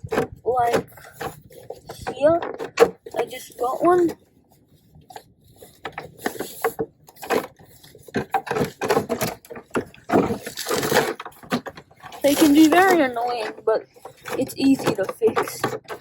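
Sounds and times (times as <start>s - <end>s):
hands fiddling with plastic parts: 0.0s - 16.0s.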